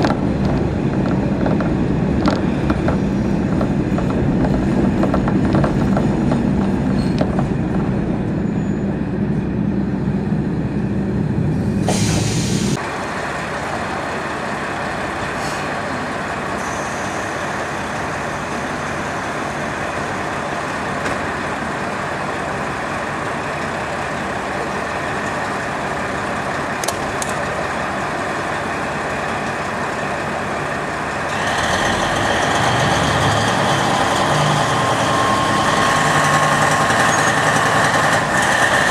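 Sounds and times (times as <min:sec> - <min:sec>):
diesel railcar engine running: 0:00.0 - 0:38.9
air hiss burst: 0:11.8 - 0:12.8.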